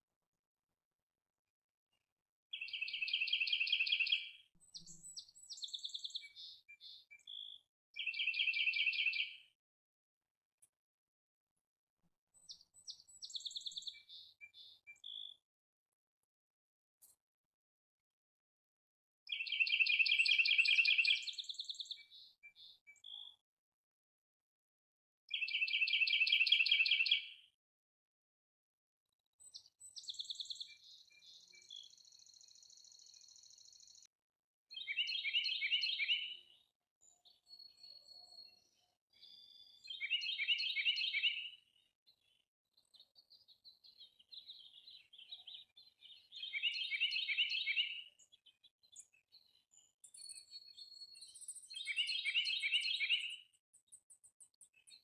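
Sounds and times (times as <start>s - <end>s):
birds calling and whistling: 2.5s - 9.4s, 19.3s - 23.2s, 25.3s - 27.3s, 34.7s - 41.6s, 42.8s - 55.0s.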